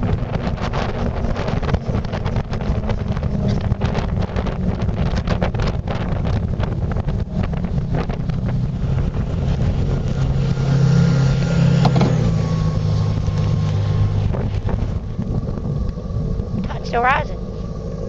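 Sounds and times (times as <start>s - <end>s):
boat motor running: 0.0s - 18.0s
wind buffeting microphone: 0.0s - 18.0s.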